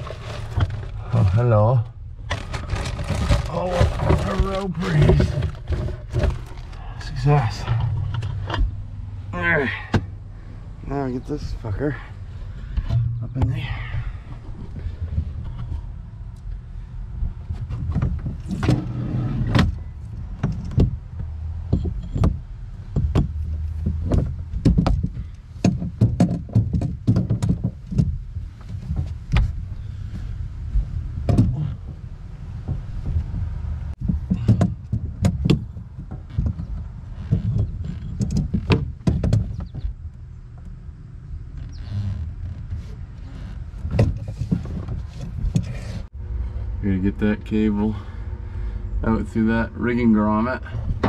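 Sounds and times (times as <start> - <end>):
steady low rumble: 0.0 - 39.0, 39.6 - 51.0
cable knocking and scraping: 2.2 - 8.8, 17.2 - 40.0, 41.5 - 46.1.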